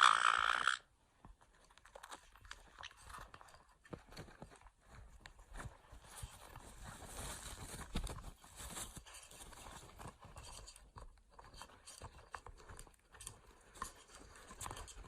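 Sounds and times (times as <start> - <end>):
claws scraping and tapping tube: 0.0 - 15.0.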